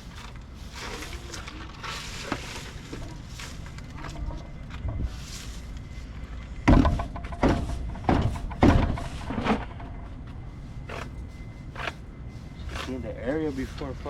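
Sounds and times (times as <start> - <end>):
dull thumps: 6.6 - 10.0.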